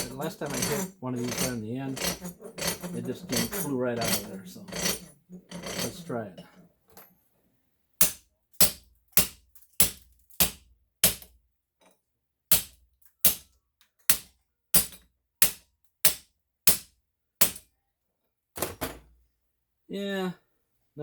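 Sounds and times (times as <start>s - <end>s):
hammer striking metal: 0.0s - 5.9s, 8.0s - 11.2s.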